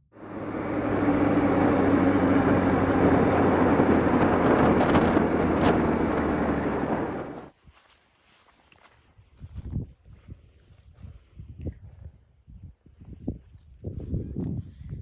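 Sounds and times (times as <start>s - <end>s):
motorcycle engine running: 0.1s - 7.5s
wind noise on microphone: 0.4s - 7.8s, 9.0s - 15.0s.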